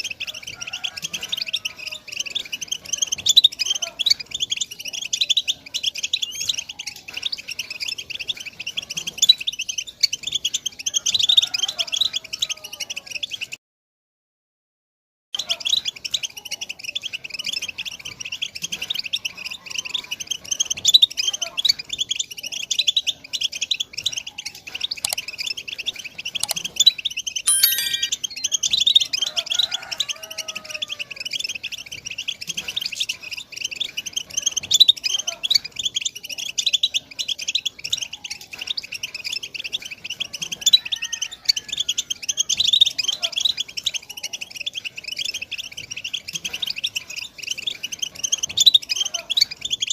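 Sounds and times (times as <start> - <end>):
finch twittering song: 21.9 - 29.1.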